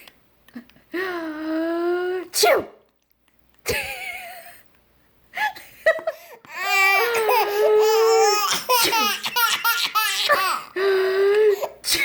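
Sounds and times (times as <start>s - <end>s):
baby laughing: 6.2s - 10.8s.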